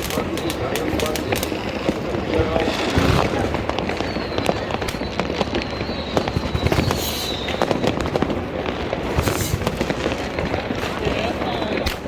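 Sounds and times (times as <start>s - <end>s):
fireworks and firecrackers banging: 0.0s - 12.0s
high falling whistle: 2.3s - 8.0s.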